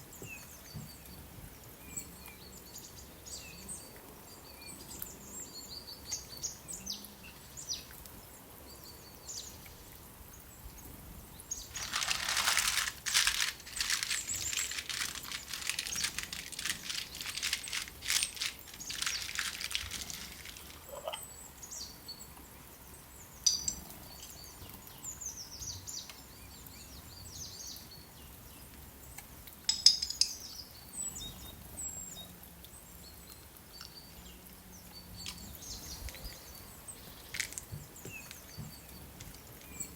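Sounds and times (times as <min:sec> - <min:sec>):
small birds chirping: 0:00.0 - 0:29.2, 0:29.9 - 0:39.9
dense crackling noise: 0:11.8 - 0:21.0.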